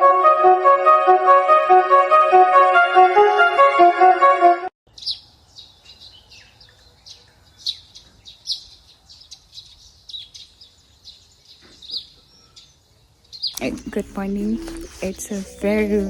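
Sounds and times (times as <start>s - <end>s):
birds chirping: 4.9s - 16.0s
faint outdoor background noise: 4.9s - 16.0s.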